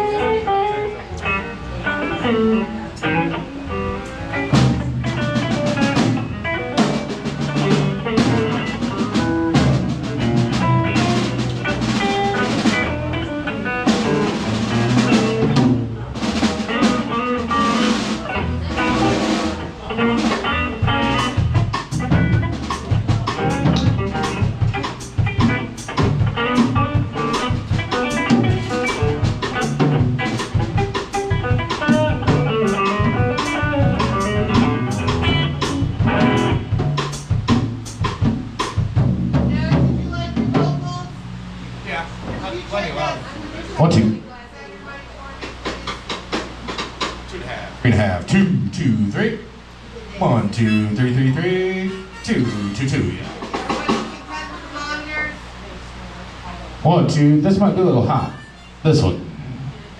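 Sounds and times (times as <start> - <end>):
electric guitar: 0.0 - 44.2
live blues band: 0.0 - 59.9
drum and rimshot hits: 4.6 - 13.0, 13.8 - 40.8.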